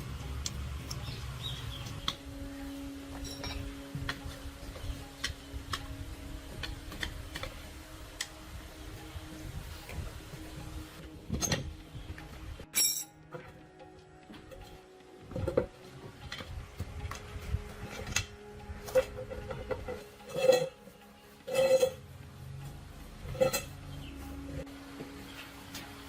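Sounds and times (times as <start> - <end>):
metal tools clinking: 3.2 - 3.7, 12.7 - 13.2, 20.2 - 22.0.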